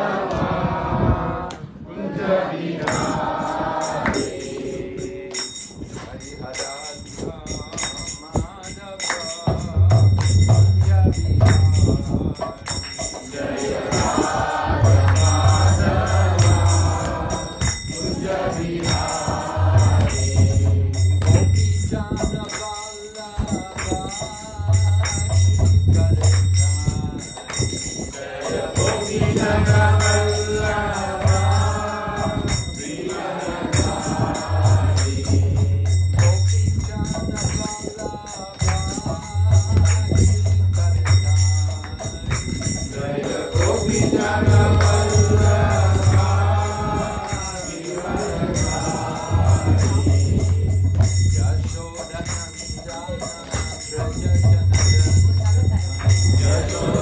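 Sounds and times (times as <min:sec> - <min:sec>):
person singing devotional music: 0:00.0 - 0:57.0
jingling percussion: 0:02.8 - 0:57.0.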